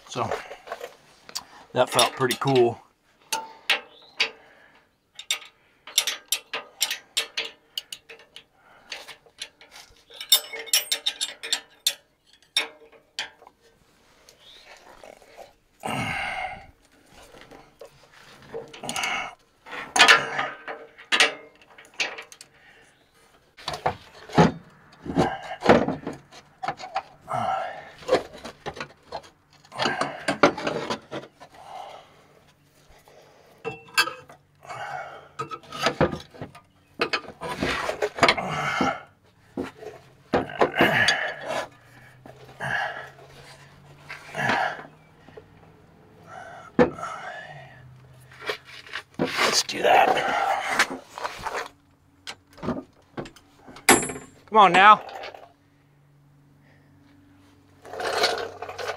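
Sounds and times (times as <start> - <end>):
metal scraping and rubbing: 57.8 - 58.9.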